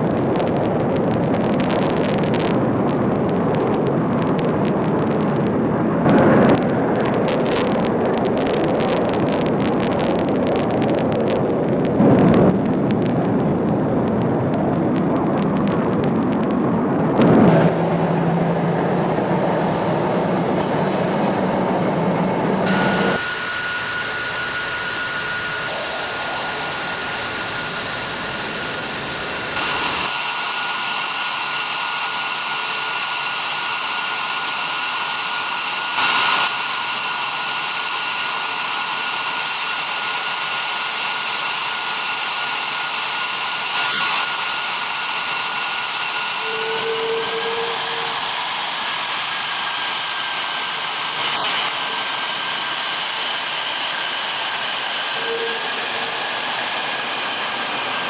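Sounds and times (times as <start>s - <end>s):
jet engine whine: 0.0s - 58.0s.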